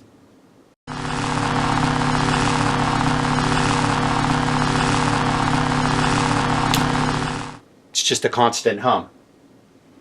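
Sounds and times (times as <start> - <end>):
lightsaber electrical hum: 0.9 - 7.6.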